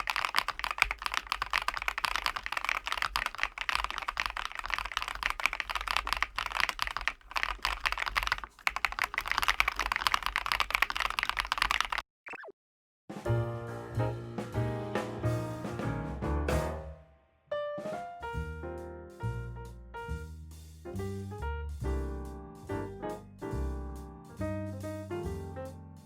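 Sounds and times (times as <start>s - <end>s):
fast typing on mechanical keyboard: 0.0s - 12.0s.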